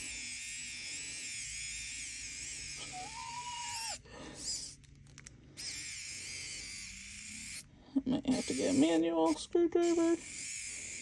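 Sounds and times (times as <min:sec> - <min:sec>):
electric screwdriver whining: 0:09.8 - 0:11.0.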